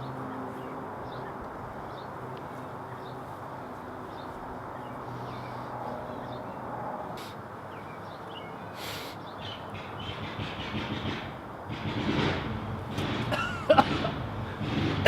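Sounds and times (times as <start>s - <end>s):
birds chirping: 0.0s - 11.3s
short hissy sounds: 7.2s - 7.4s, 8.8s - 9.2s
steady background hum: 9.6s - 15.0s.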